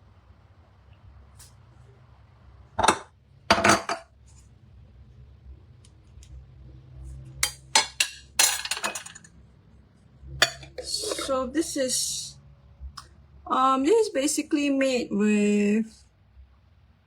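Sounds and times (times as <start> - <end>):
spoon and kitchenware clinking: 7.4 - 9.3, 10.4 - 11.3.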